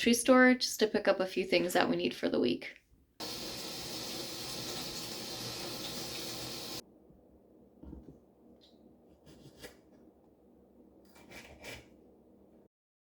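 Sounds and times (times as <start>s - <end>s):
loud steady hiss: 3.2s - 6.8s.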